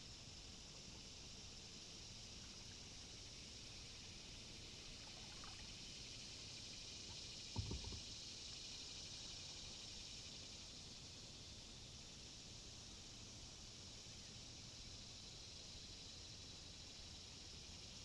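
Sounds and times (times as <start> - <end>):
dull knock: 7.5 - 8.0.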